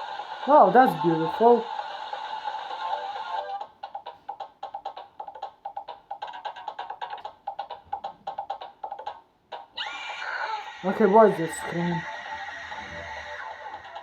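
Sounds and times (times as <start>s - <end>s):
cartoon music: 9.6s - 14.0s.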